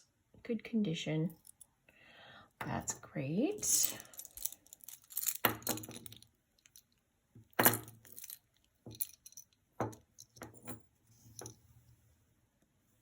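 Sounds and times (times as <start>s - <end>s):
jewelry clinking and rattling: 1.3s - 1.7s, 3.5s - 11.7s.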